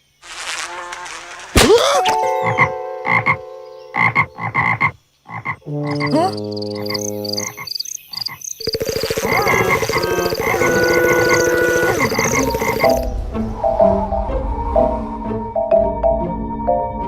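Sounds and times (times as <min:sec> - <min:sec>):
buzzing croaking rattle: 0:04.0 - 0:13.0
cartoon clicks and honks: 0:08.8 - 0:12.6.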